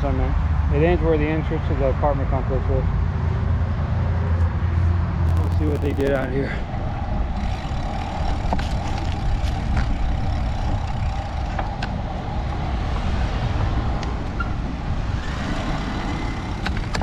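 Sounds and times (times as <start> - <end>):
wind and road noise: 0.0 - 17.0
steady hum: 5.3 - 6.4.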